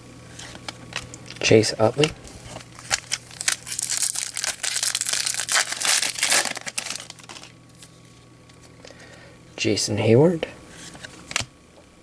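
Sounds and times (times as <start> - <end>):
cards being handled: 0.3 - 8.8, 10.7 - 11.5
foil wrapper crinkling: 0.4 - 8.7.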